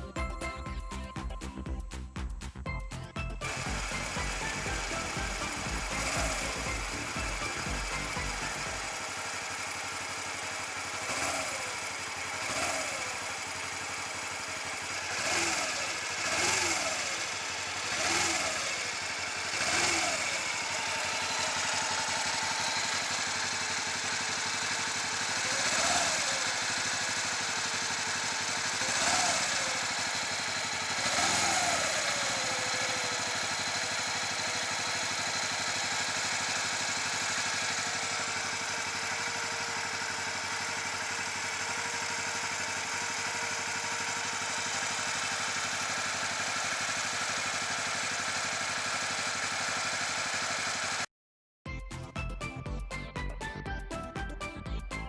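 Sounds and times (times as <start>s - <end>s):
throttle blips: 0.0s - 9.1s
motorcycle engine idling: 0.0s - 51.1s.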